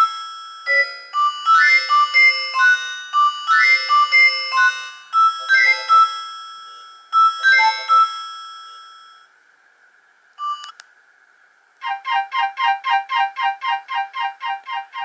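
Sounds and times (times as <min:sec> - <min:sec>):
bell-like ringtone melody: 0:00.0 - 0:09.3, 0:10.4 - 0:10.7, 0:11.8 - 0:15.0
ringtone fast repeated notes: 0:00.0 - 0:09.3, 0:11.8 - 0:15.0
short phone beep: 0:10.4 - 0:10.8.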